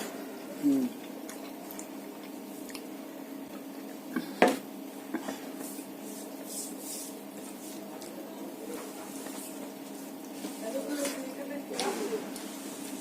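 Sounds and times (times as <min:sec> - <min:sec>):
food squishing: 0:00.4 - 0:04.1.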